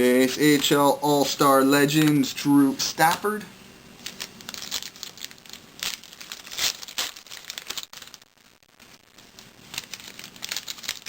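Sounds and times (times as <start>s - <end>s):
plastic packaging crinkling: 4.0s - 11.0s.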